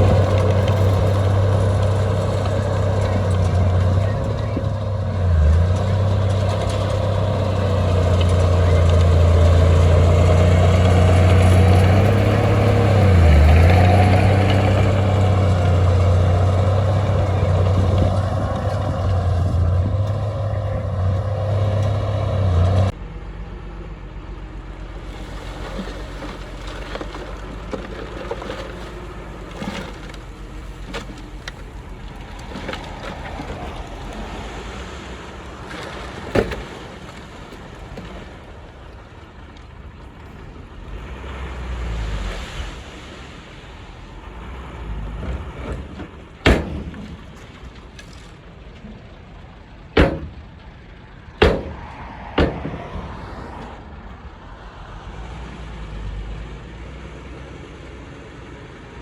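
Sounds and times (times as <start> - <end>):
heavy diesel engine running: 0.0 - 41.1
quieter engine rumble: 0.0 - 59.0
sharp knocks: 46.4 - 47.2, 50.0 - 50.4, 51.4 - 53.0.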